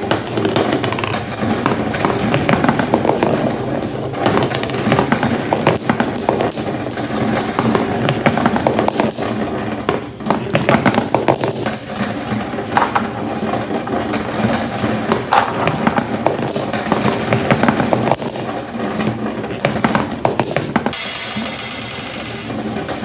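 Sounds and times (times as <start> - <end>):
marbles rolling: 0.0 - 23.0
marbles clicking on track: 14.1 - 23.0.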